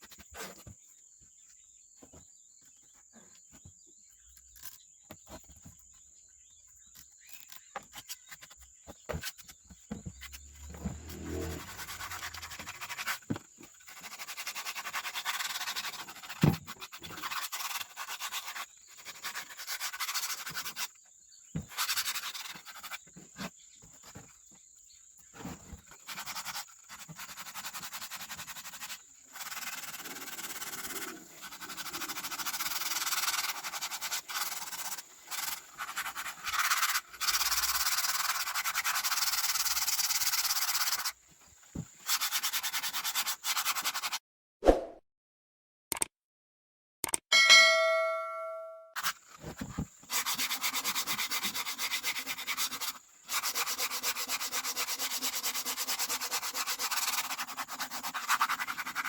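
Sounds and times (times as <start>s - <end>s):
abrasive rubbing on hard surface: 10.0s - 13.2s.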